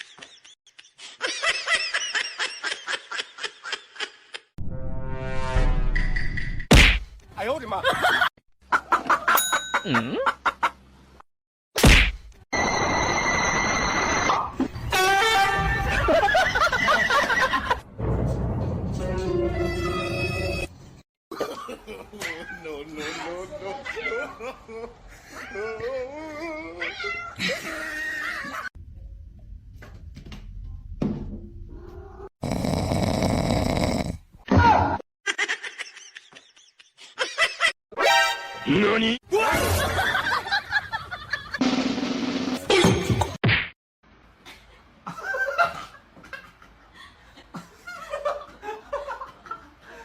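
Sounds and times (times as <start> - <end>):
person laughing: 9.7 - 10.6.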